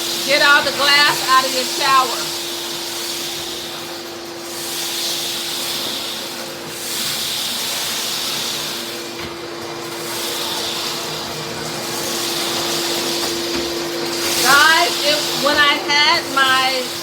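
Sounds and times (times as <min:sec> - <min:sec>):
shop vac humming: 0:00.0 - 0:17.0
vacuum nozzle sucking glass: 0:14.1 - 0:17.0.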